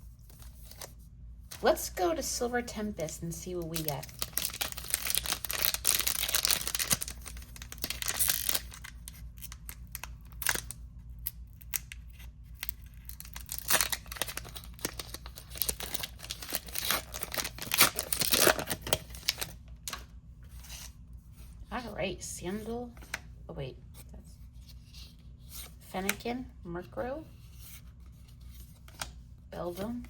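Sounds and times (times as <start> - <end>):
foil pack tearing and crinkling: 3.7 - 10.8, 12.5 - 20.0.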